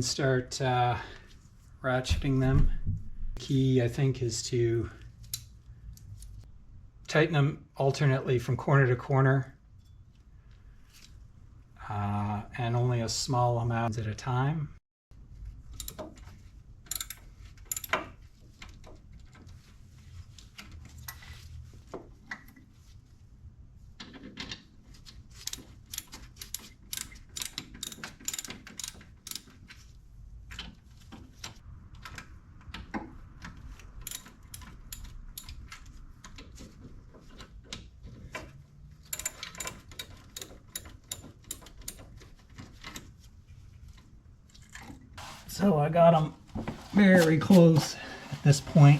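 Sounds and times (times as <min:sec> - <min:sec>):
socket ratchet clicking: 0:16.9 - 0:18.0, 0:25.4 - 0:29.5, 0:34.0 - 0:35.7, 0:39.1 - 0:42.0.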